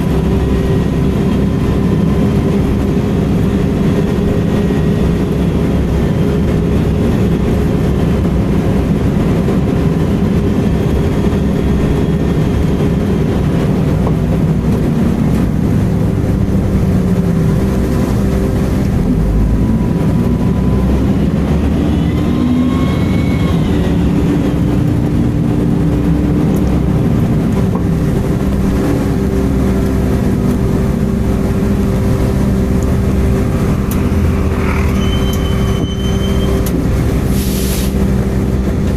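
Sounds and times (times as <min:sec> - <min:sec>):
bus engine running: 0:00.0 - 0:38.9
faint high screech: 0:33.5 - 0:38.0.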